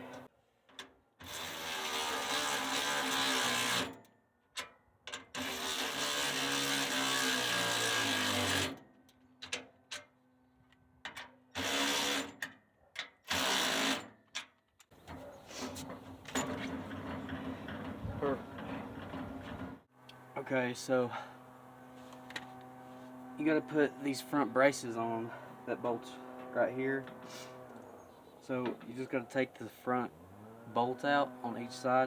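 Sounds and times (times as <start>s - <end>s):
cordless drill driving nuts: 5.4s - 8.8s, 11.6s - 12.5s, 13.2s - 14.1s, 25.3s - 28.6s.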